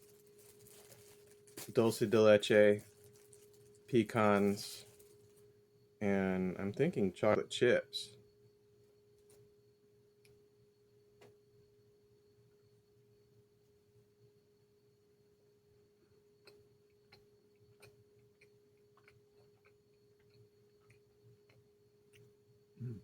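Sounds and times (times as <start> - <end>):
faint electrical hum: 0.0 - 23.0
faint clicks and ticks: 16.0 - 22.4.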